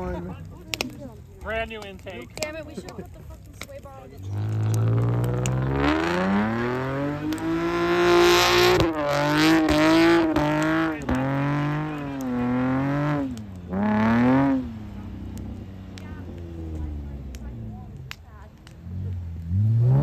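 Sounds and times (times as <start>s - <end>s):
car engine revving: 4.0s - 20.0s.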